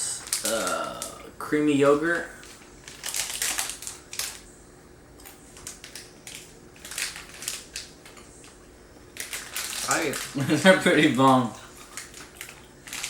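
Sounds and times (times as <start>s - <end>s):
person chewing crunchy candy: 0.0s - 1.2s, 11.7s - 13.0s.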